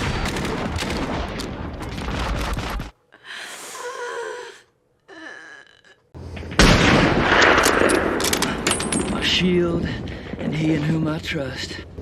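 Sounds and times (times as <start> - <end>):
gunfire: 6.4 - 9.1.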